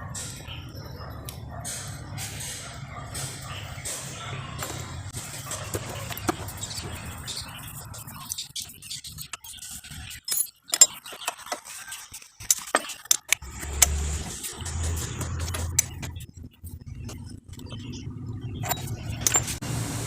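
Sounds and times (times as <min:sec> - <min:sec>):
hand tools clinking: 0:10.1 - 0:11.8, 0:18.6 - 0:19.6.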